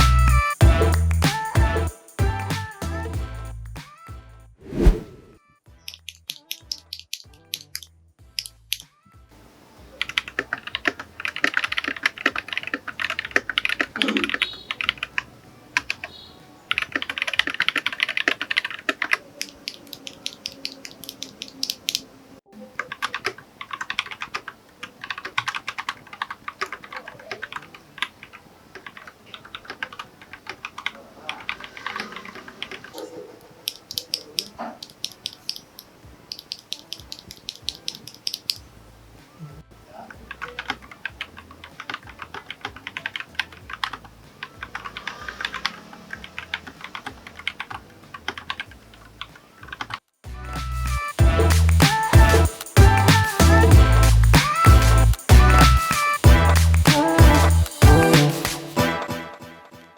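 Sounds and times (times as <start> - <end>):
mechanical keyboard typing: 9.9 - 22.1, 22.8 - 38.6, 40.2 - 50.0.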